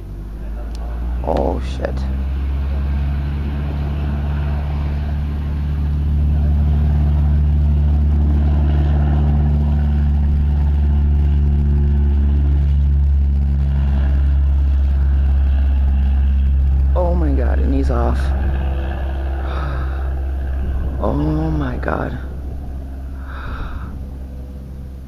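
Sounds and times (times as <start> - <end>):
engine droning: 0.0 - 25.0.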